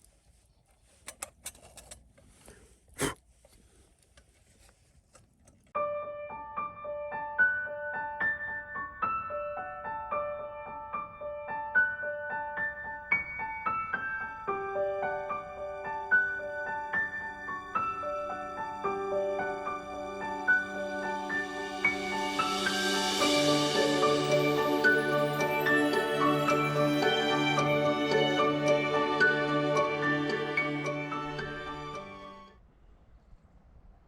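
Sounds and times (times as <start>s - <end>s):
gentle piano music: 5.8s - 32.6s.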